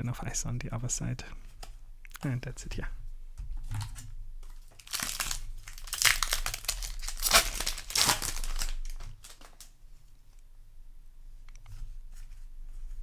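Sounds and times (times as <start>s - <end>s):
foil wrapper crinkling and tearing: 3.8s - 9.7s.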